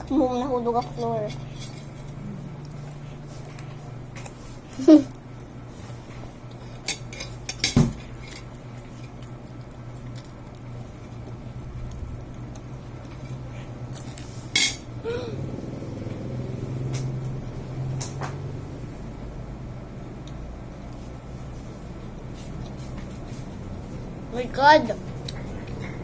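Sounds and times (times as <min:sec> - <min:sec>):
steady low hum: 0:00.0 - 0:26.0
cutlery clinking against dishes: 0:06.8 - 0:08.5, 0:14.6 - 0:14.9.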